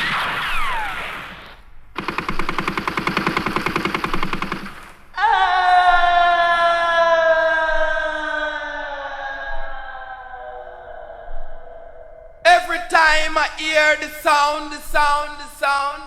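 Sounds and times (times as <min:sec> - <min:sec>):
electronic tone sinking in pitch: 0:00.0 - 0:01.6
rapid electronic rattling burst: 0:00.0 - 0:05.1.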